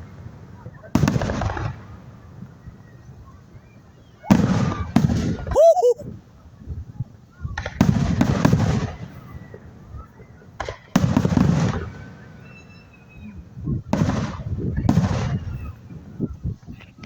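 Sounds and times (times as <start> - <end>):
fireworks booming and crackling: 0.1 - 2.1, 4.3 - 5.6, 7.6 - 9.2, 10.6 - 12.2, 13.9 - 15.9.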